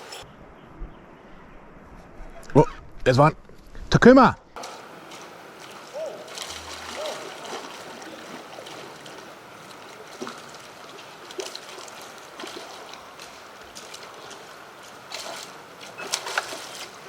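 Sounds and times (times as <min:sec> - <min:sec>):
stream water running: 0:04.6 - 0:17.0.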